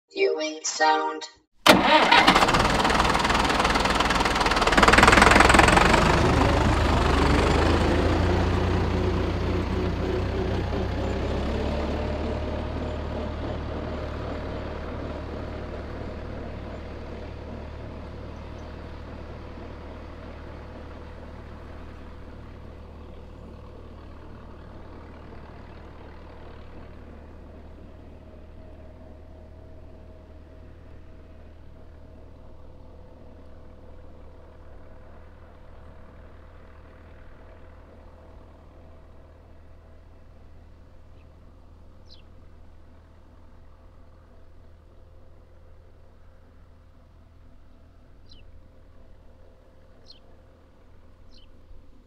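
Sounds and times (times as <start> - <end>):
tractor engine revving: 1.7 - 12.6.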